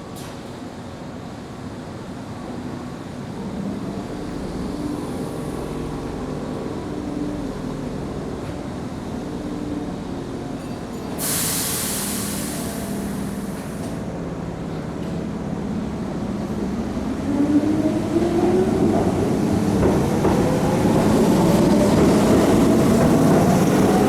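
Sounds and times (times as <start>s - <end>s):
electric train rumbling: 0.6s - 24.0s
compressed air hiss: 11.2s - 13.9s.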